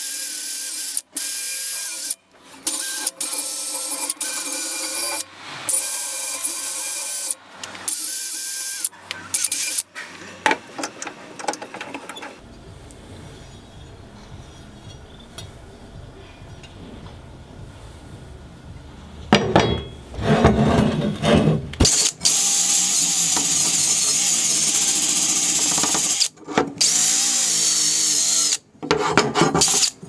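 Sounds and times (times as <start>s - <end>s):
power tool rasping: 2.7s - 8.0s, 20.2s - 30.0s.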